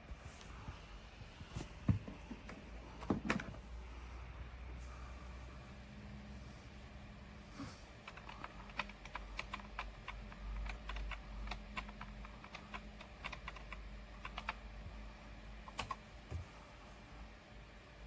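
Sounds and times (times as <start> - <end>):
low steady hum: 0.0 - 18.0
typing on computer keyboard: 8.0 - 14.6, 15.7 - 16.0.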